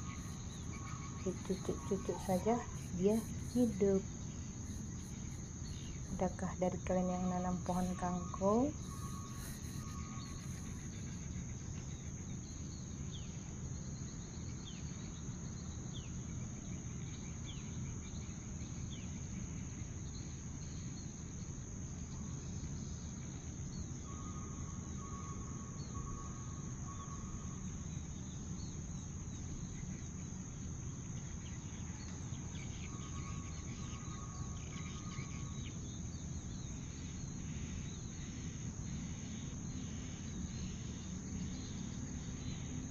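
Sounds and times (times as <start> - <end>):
crickets chirring: 0.0 - 42.9
short bird chirps: 8.7 - 11.1.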